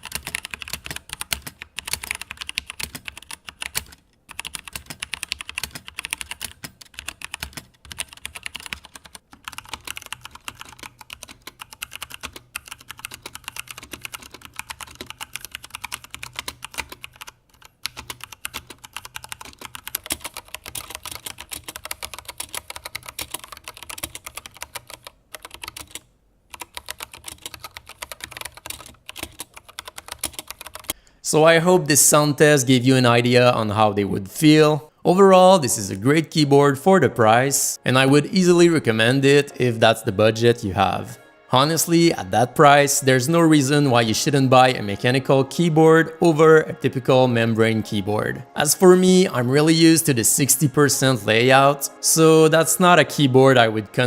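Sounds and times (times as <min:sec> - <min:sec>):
typing on mechanical keyboard: 0:00.0 - 0:31.0.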